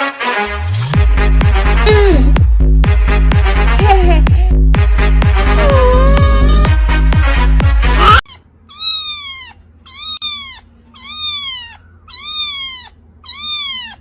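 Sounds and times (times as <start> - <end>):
music: 0.0 - 8.2
cat meowing: 5.6 - 6.8, 8.0 - 14.0.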